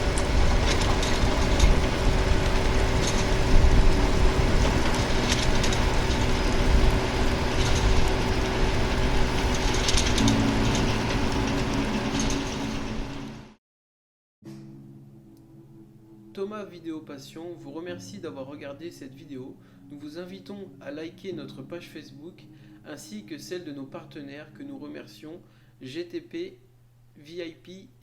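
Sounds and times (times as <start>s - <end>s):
diesel engine drone: 0.0s - 13.6s
metallic clanks and rattles: 0.1s - 3.4s, 4.5s - 6.6s, 7.5s - 8.6s, 9.4s - 13.2s.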